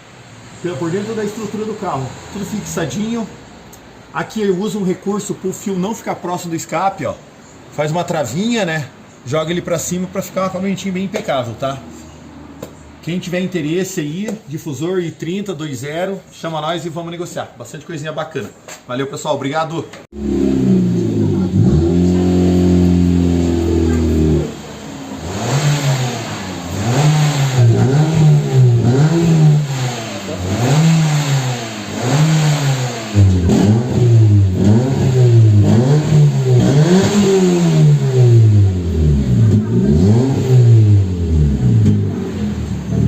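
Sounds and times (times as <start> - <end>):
car engine revving: 20.1 - 43.0.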